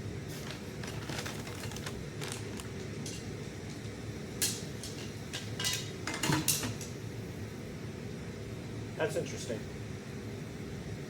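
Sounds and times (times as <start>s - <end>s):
steady low hum: 0.0s - 11.0s
fire tongs clinking: 0.3s - 7.0s.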